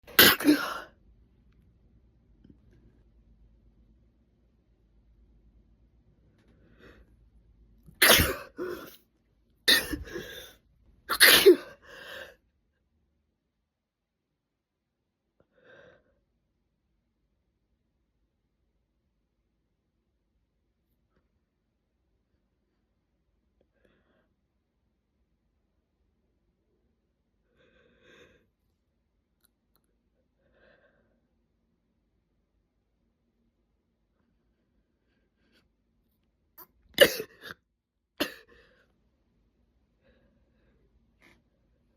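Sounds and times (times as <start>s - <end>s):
woman sneezing: 0.1s - 0.9s, 8.0s - 9.0s, 9.7s - 10.5s, 11.1s - 11.8s.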